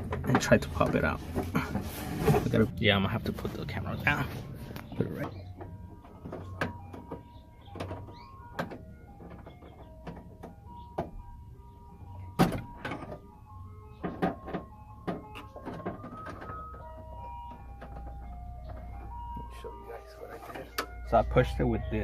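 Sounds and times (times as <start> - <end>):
chiming melody: 2.6 - 22.0
clicks and knocks inside car door: 4.8 - 11.3, 12.3 - 13.3, 13.9 - 19.5.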